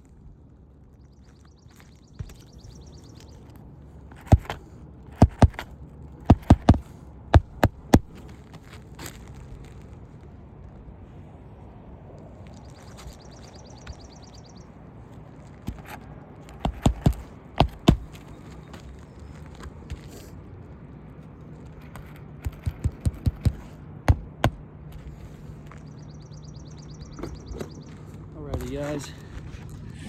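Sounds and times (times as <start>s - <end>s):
hammer striking roofing nails: 4.2s - 8.3s, 15.7s - 18.3s, 21.9s - 24.6s.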